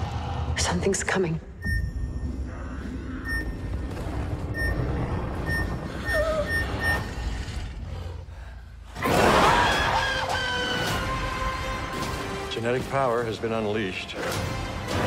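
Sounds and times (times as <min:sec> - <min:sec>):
short electronic beeps: 0:01.6 - 0:02.3, 0:03.2 - 0:07.2.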